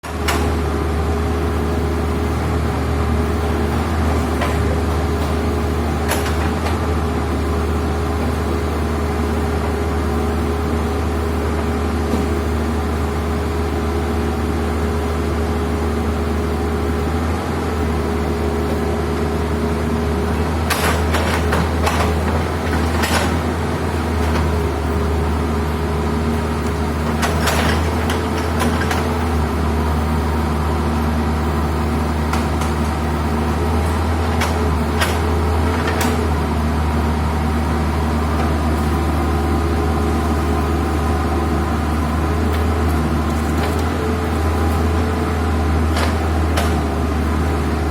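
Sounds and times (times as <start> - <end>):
excavator diesel engine running: 0.0 - 47.9
sharp knocks and clanks: 4.1 - 6.8, 20.5 - 24.7, 26.6 - 29.4, 32.2 - 36.3, 45.9 - 46.9.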